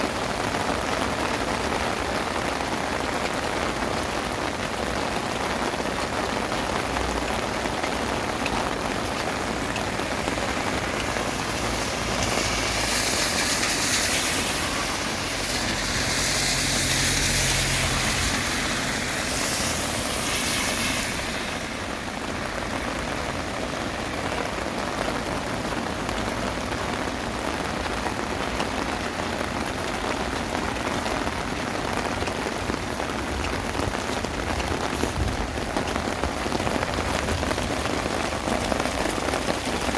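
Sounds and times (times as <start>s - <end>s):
heavy rain on hard surfaces: 0.0s - 39.9s
vehicle passing: 9.4s - 21.5s.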